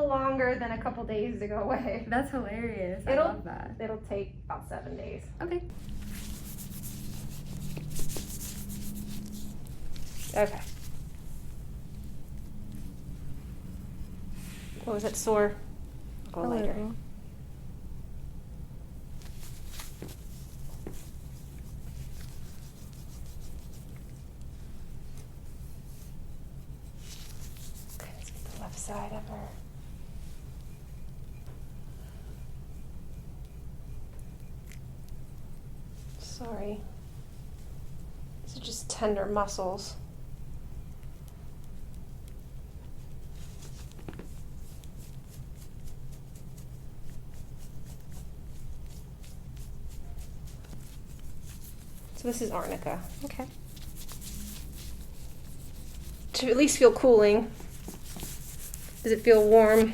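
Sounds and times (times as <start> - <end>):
low hum: 5.3 - 43.2
rubbing and rustling: 5.7 - 59.9.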